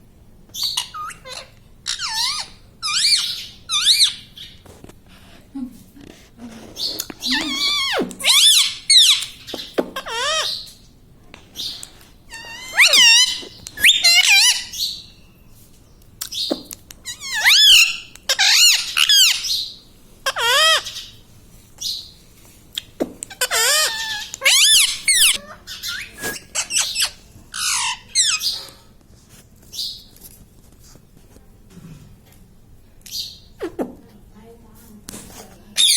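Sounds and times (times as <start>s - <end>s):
parrot squawking: 0.6s - 4.6s, 6.8s - 10.7s, 12.3s - 15.1s, 16.3s - 21.2s, 22.8s - 28.7s.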